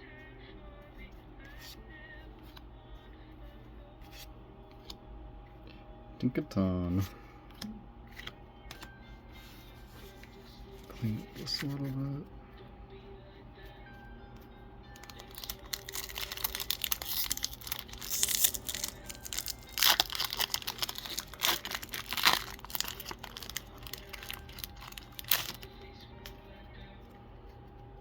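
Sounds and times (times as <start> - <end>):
foil wrapper crinkling and tearing: 15.0 - 25.8.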